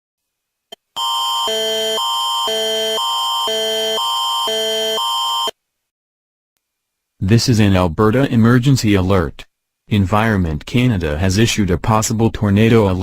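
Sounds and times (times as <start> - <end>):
electronic alert tone: 1.0 - 5.5.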